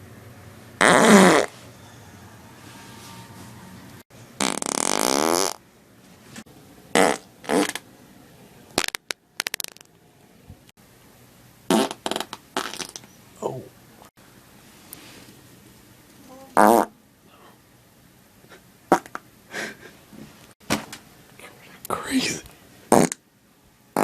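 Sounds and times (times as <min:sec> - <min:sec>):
person farting: 0:00.8 - 0:01.5, 0:04.4 - 0:05.6, 0:06.9 - 0:07.8, 0:08.8 - 0:09.9, 0:11.7 - 0:13.0, 0:16.6 - 0:16.9, 0:18.9 - 0:19.2, 0:22.9 - 0:23.2.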